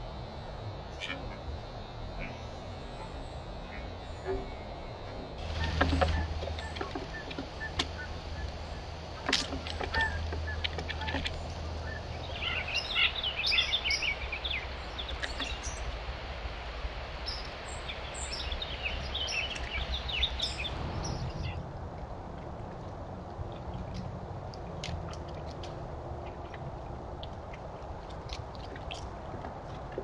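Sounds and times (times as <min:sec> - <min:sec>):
birds chirping: 0:00.0 - 0:16.2, 0:17.1 - 0:21.6
microphone hum and hiss: 0:00.0 - 0:30.0.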